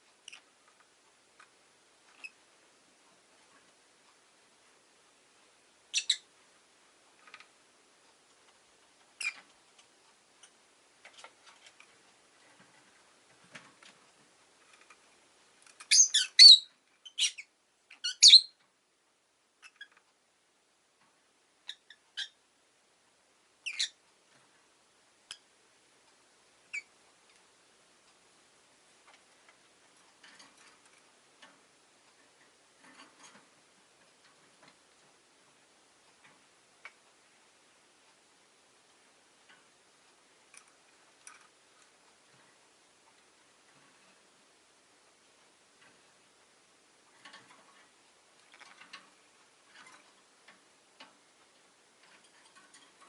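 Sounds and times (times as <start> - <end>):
faint small clicks: 0.0 - 2.4, 26.8 - 28.2, 36.0 - 37.2, 38.9 - 44.2, 47.0 - 53.0
lovebird shrill chirping: 5.9 - 6.2, 15.9 - 18.6, 21.7 - 22.4, 23.6 - 24.0
faint light ticking: 23.6 - 53.0.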